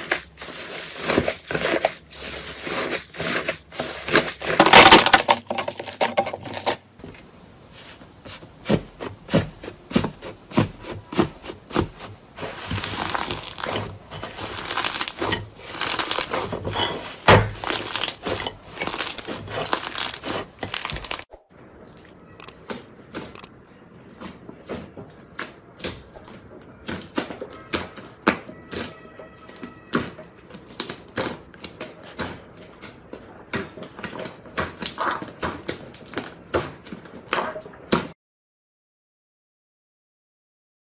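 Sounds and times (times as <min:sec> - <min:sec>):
slime crackling and popping: 0:11.4 - 0:16.5, 0:17.2 - 0:21.3.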